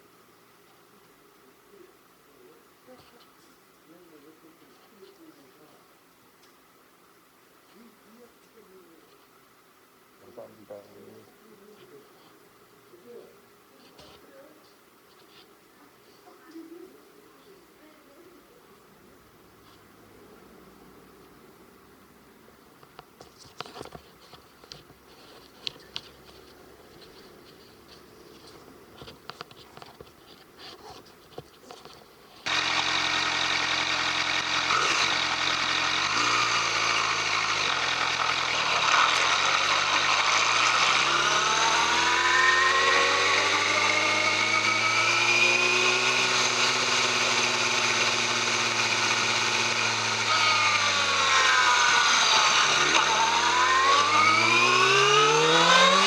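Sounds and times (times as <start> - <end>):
motorcycle engine revving: 32.5 - 56.0.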